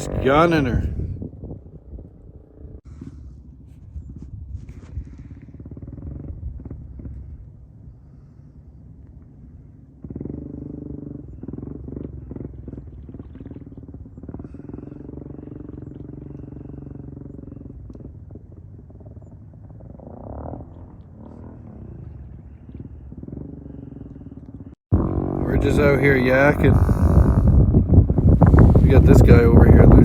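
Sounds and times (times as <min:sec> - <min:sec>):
vehicle engine revving: 0:00.0 - 0:01.0, 0:10.0 - 0:30.0.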